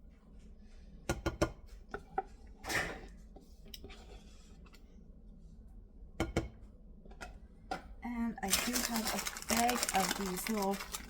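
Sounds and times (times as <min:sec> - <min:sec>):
kitchen scrape: 0:03.8 - 0:04.7.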